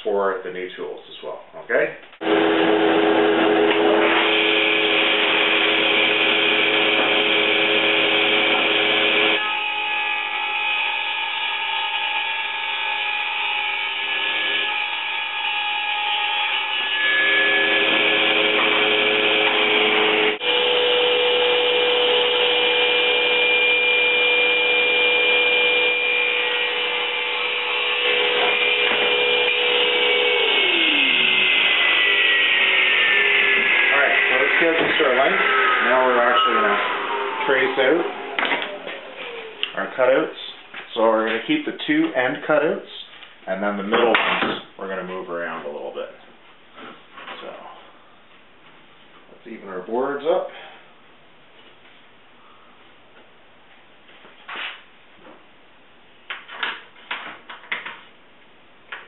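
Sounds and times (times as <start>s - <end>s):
electric power saw cutting board: 2.2s - 40.3s.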